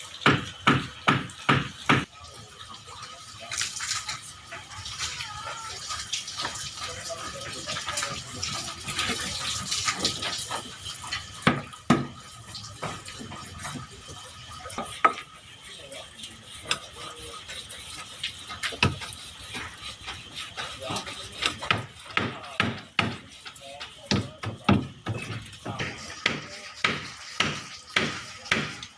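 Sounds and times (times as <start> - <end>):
sharp knocks and clatters: 0.0 - 2.1, 9.0 - 15.3, 18.0 - 28.9
voices: 2.4 - 10.8, 12.6 - 28.9.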